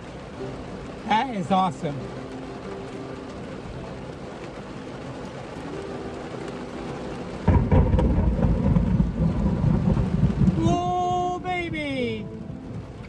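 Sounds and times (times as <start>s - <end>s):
heavy rain: 0.0s - 13.0s
thunder clap and rumble: 7.4s - 11.8s.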